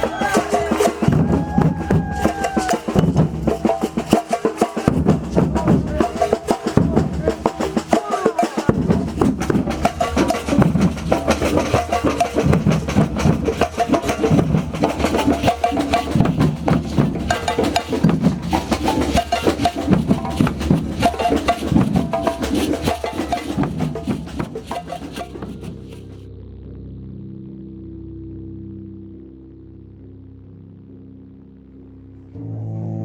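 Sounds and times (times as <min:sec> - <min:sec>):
fast drumming: 0:00.0 - 0:26.2.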